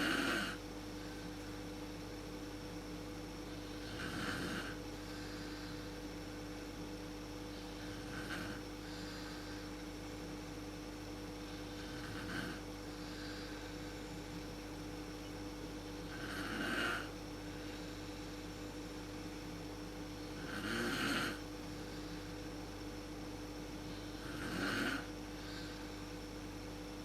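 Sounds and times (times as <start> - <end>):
woman snoring: 0.0 - 0.6, 3.7 - 5.8, 7.5 - 9.7, 11.6 - 13.7, 16.0 - 17.2, 20.3 - 21.5, 24.0 - 25.8
steady low hum: 0.0 - 27.0.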